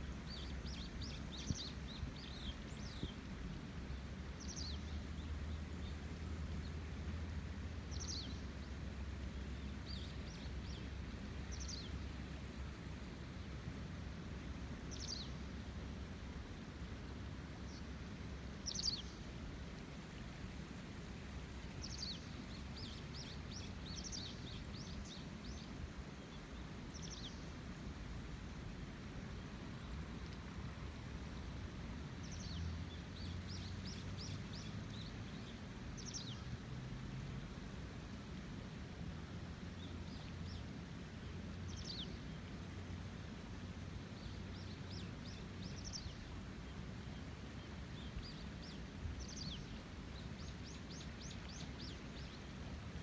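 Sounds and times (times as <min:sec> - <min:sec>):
river water rushing: 0:00.1 - 0:53.0.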